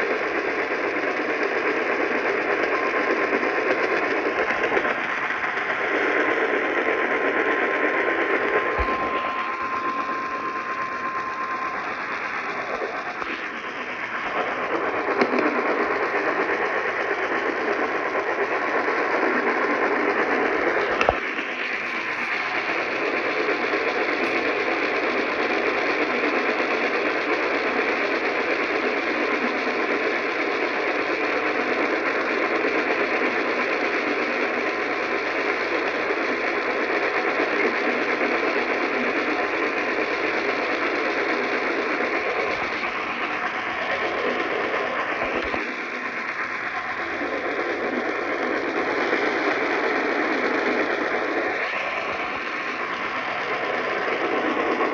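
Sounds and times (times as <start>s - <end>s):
radio static hiss: 0.0s - 34.2s, 34.9s - 54.9s
steady tone: 2.8s - 23.0s.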